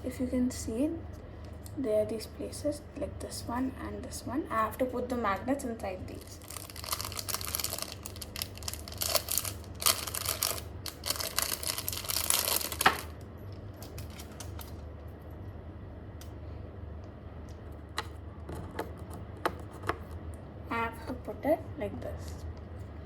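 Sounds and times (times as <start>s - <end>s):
packaging rustling and crinkling: 6.1s - 14.8s.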